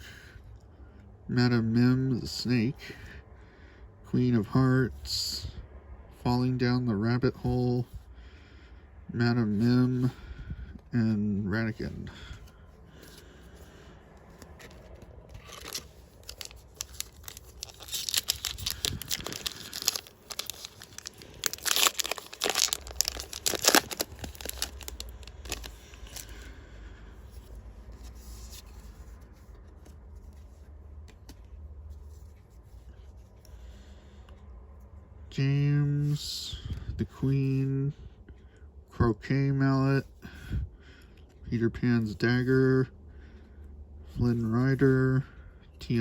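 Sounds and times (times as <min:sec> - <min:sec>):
foil pack tearing and crinkling: 0:15.4 - 0:26.4.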